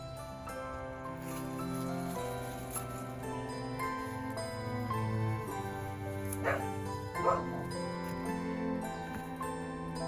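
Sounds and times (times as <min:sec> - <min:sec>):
background music: 0:00.0 - 0:10.0
dog barking: 0:06.4 - 0:07.8.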